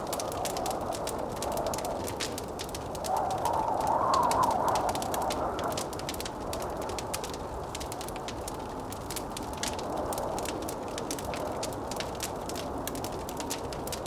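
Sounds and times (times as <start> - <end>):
wind rushing: 0.0 - 7.1
wood fire crackling: 0.0 - 14.0.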